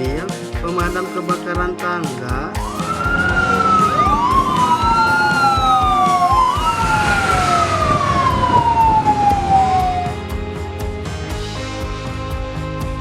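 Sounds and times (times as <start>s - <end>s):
fire engine siren wailing: 2.6s - 10.3s.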